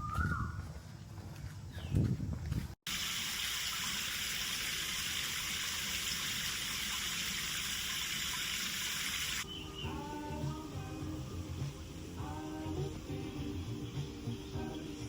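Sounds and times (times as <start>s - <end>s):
running water rushing: 2.9s - 9.4s.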